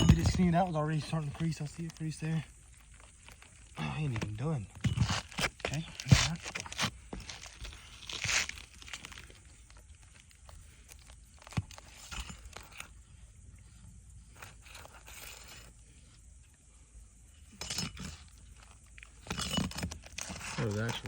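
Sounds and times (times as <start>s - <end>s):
scraping roof shingles: 0.0s - 9.4s.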